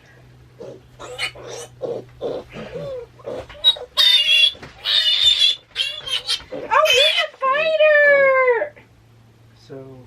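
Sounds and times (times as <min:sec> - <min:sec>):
piglet grunting: 0:00.6 - 0:07.4
piglet squealing: 0:00.6 - 0:07.4.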